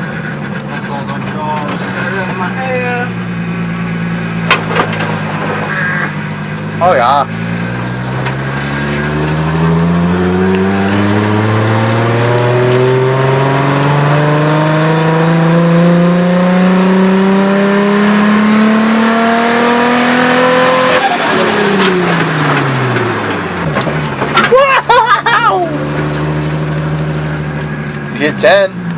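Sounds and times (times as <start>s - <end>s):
engine revving full throttle: 1.1s - 23.7s
turbo whine: 3.0s - 15.6s.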